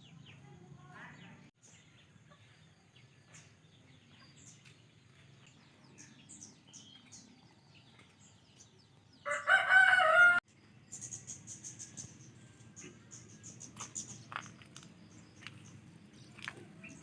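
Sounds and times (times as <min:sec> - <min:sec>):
small birds chirping: 0:00.0 - 0:09.6, 0:10.5 - 0:17.0
rooster crowing: 0:09.2 - 0:10.4.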